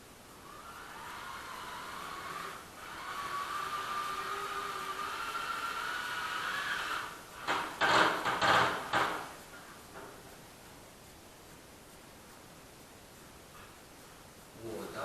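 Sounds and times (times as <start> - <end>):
small motor whining: 0.4 - 7.7.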